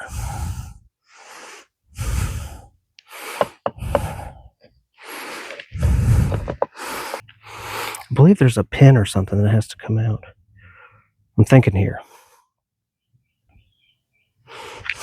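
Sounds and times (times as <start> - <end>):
man breathing hard and grunting: 0.0 - 8.1.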